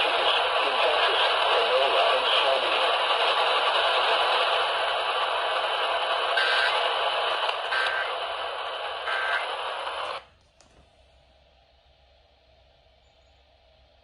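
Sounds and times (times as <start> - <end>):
radio static: 0.0 - 10.3
faint hum: 0.0 - 14.0
data bursts: 6.4 - 6.8, 9.0 - 9.5.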